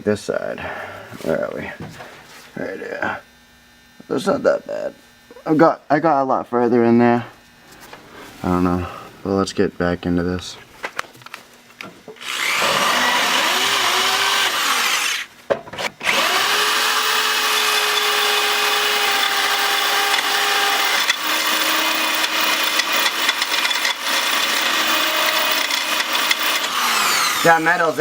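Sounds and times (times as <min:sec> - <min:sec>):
drill motor whine: 0:12.1 - 0:28.0
drill bit grinding metal: 0:12.2 - 0:15.3, 0:15.9 - 0:28.0.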